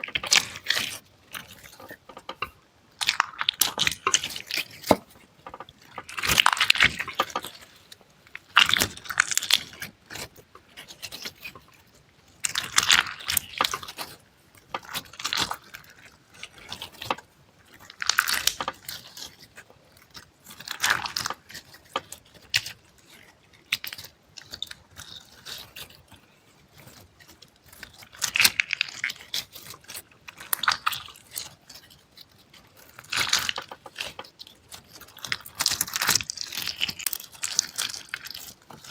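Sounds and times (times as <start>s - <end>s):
close-miked crunching: 26.8s - 38.9s.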